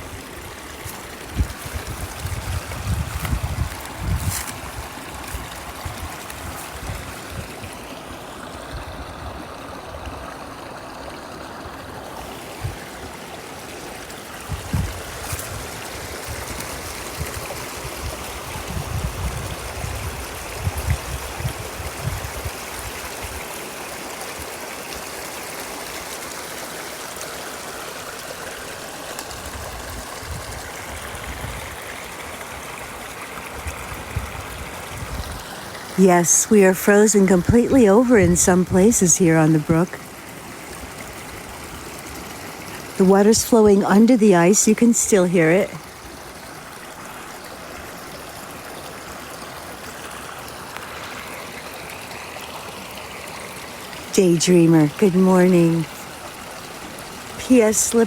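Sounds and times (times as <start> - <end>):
brook running under ice: 0.0 - 23.5, 25.3 - 58.0.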